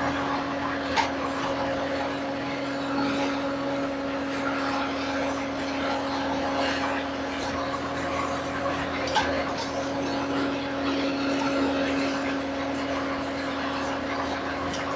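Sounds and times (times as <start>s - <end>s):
loader engine running: 0.0s - 14.9s.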